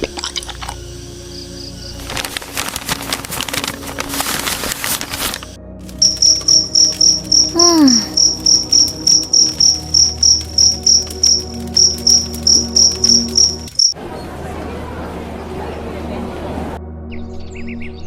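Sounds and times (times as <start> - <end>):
cricket chirping: 0.1 - 2.4, 5.3 - 14.0.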